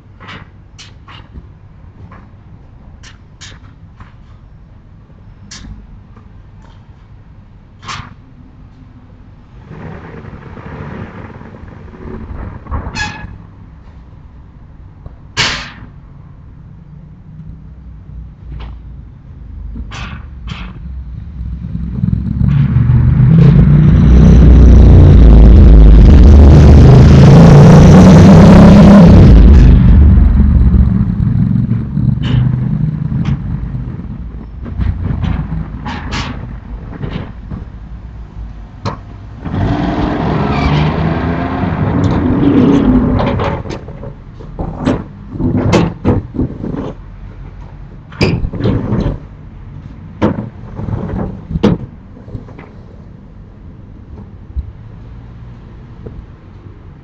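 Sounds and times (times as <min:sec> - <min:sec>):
sharp knocks and bangs: 0:19.7 - 0:21.0, 0:26.2 - 0:37.9, 0:50.1 - 0:52.8
loud vehicle engine running: 0:20.8 - 0:37.9.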